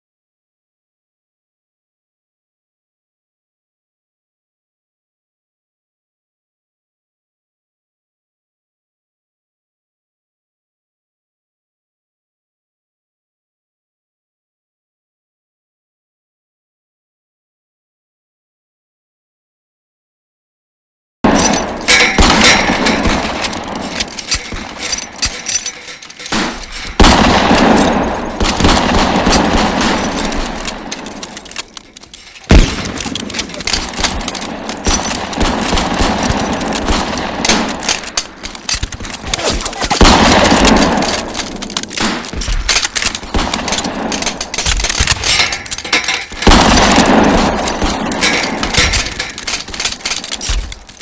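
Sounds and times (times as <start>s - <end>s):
automatic gunfire: 21.3s - 51.0s.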